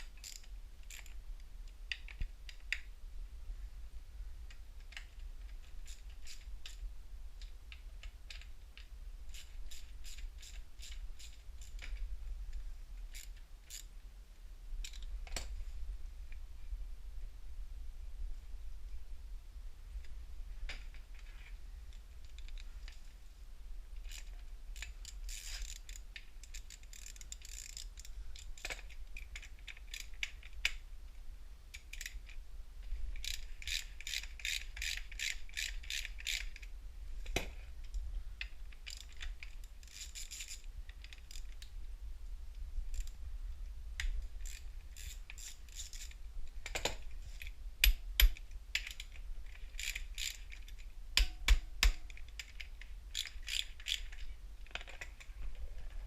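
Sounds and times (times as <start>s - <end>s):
ratchet clicking: 0.1s - 1.2s, 4.8s - 6.9s, 8.0s - 12.0s, 13.0s - 13.9s, 24.0s - 30.8s, 31.7s - 32.3s, 33.2s - 36.7s, 38.8s - 41.6s, 44.0s - 47.0s, 47.8s - 55.0s.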